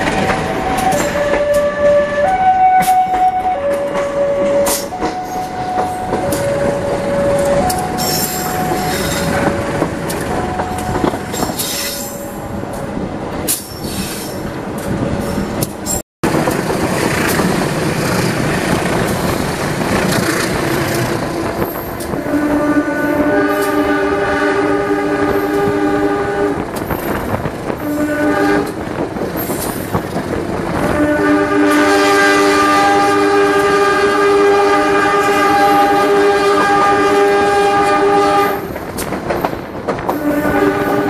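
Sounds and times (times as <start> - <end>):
train wheels clattering and squealing: 0.0 - 22.2, 26.6 - 30.9, 37.3 - 41.0
two-tone warning signal: 0.5 - 12.2
locomotive horn chord: 0.6 - 11.4, 20.7 - 26.6, 27.8 - 28.8, 30.8 - 38.7, 40.1 - 41.0.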